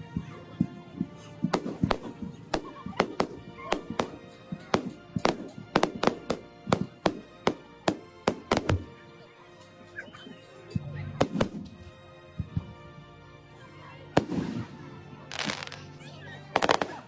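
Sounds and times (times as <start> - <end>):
faint background music: 0.0 - 17.0
fireworks bangs: 1.4 - 9.0, 14.2 - 15.9, 16.6 - 17.0.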